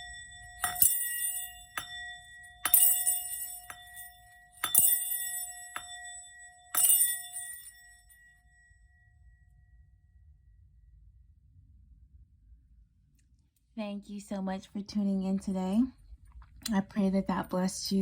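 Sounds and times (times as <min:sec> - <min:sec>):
small metal bell ringing: 0:00.0 - 0:09.4.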